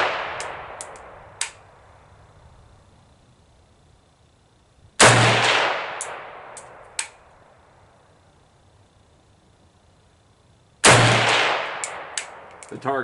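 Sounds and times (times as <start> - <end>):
rifle shot with echo: 0.0 - 1.1, 5.0 - 7.2, 10.8 - 12.6
light sharp clicks: 0.4 - 1.6, 6.0 - 7.2, 11.8 - 12.8.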